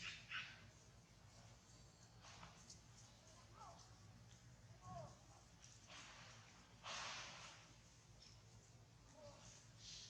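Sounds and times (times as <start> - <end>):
soft hiss: 5.6 - 10.0.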